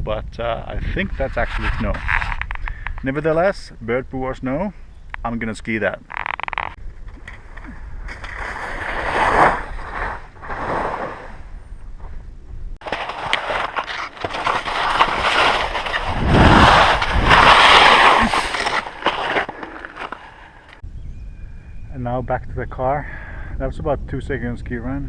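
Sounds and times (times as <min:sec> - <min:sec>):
skis scraping over snow: 0:08.2 - 0:11.5, 0:12.8 - 0:20.8.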